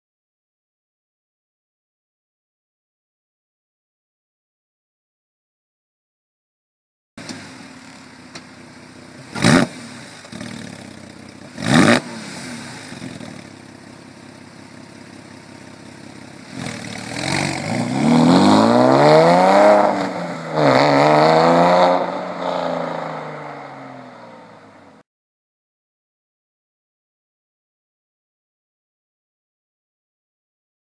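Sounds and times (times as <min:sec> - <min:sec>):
car engine idling and revving: 0:07.2 - 0:25.0.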